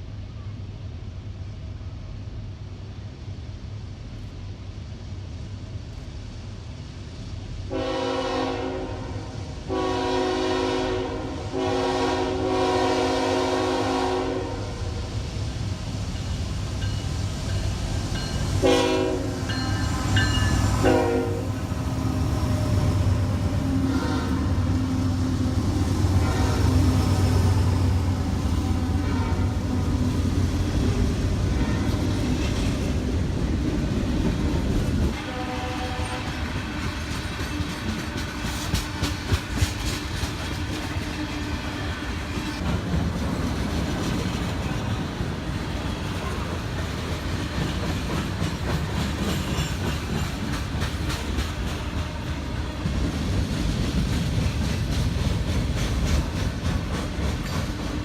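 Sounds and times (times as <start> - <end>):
diesel locomotive rumble: 0.0 - 58.0
train horn: 7.7 - 15.0, 18.6 - 19.8, 20.7 - 21.8, 22.6 - 25.4, 26.0 - 27.2, 28.6 - 30.0, 31.5 - 32.1, 35.1 - 36.5, 51.4 - 53.1
train cars clattering over rails: 26.1 - 58.0.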